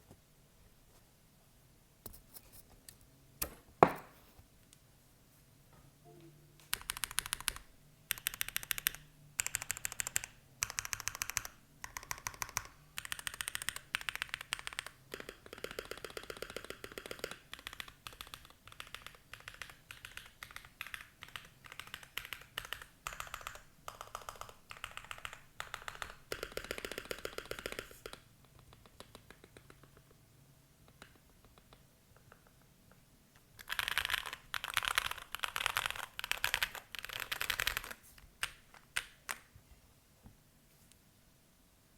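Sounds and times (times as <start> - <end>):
mechanical keyboard typing: 6.6 - 30.1, 33.6 - 39.5.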